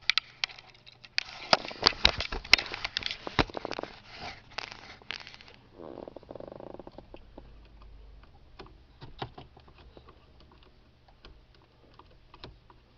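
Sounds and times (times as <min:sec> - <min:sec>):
plastic parts rattling: 0:00.0 - 0:05.6.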